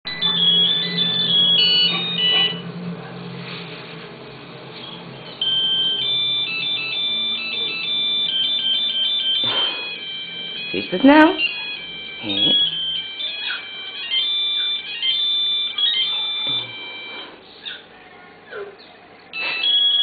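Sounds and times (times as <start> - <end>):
mobile phone ringtone melody: 0.1 - 2.7, 5.1 - 17.4, 19.3 - 20.0.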